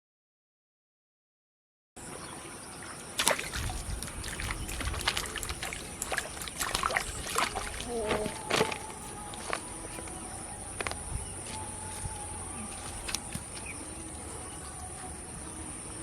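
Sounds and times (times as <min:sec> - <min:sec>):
water splashing and sloshing: 0:02.0 - 0:16.0
high-pitched insect drone: 0:03.2 - 0:16.0.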